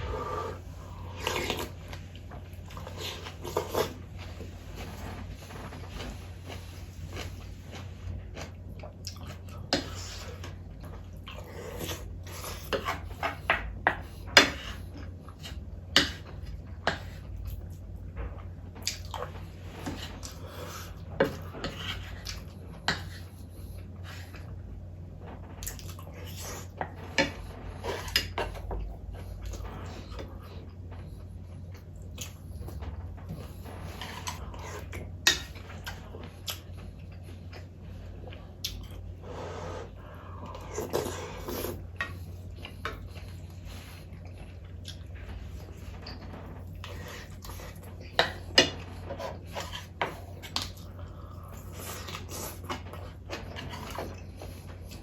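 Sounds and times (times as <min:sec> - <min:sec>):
steady low hum: 0:00.0 - 0:55.0
chewing and mouth sounds: 0:06.4 - 0:23.4, 0:31.7 - 0:39.0, 0:40.4 - 0:55.0.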